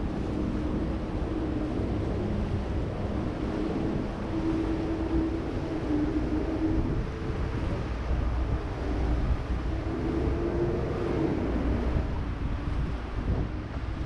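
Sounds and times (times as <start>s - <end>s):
boat engine running: 0.0s - 14.0s
wind buffeting microphone: 0.0s - 14.0s.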